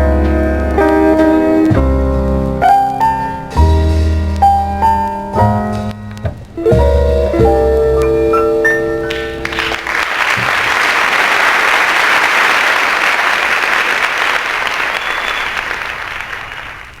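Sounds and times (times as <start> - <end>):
audience applauding: 9.1 - 17.0.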